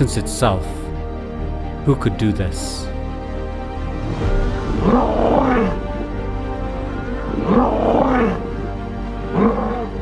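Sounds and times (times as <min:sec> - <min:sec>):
background music of held tones: 0:00.0 - 0:01.1, 0:01.7 - 0:03.1.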